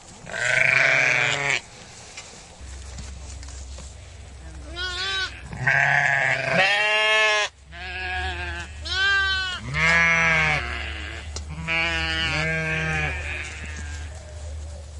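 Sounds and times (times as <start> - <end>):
steady low rumble: 0.0 - 14.9
sheep bleating: 0.3 - 1.6, 4.6 - 14.1.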